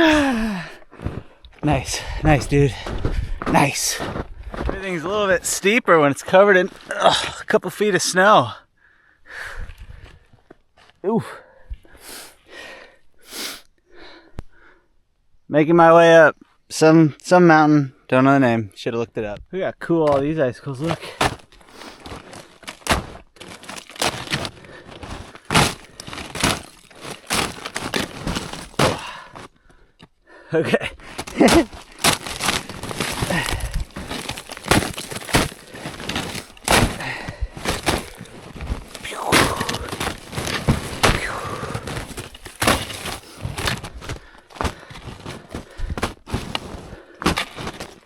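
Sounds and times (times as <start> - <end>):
heavy breathing: 0.0 - 3.5, 8.8 - 10.3, 11.3 - 14.9, 23.6 - 47.8
footsteps crunching through snow: 0.5 - 5.5, 20.9 - 29.5, 31.0 - 48.0.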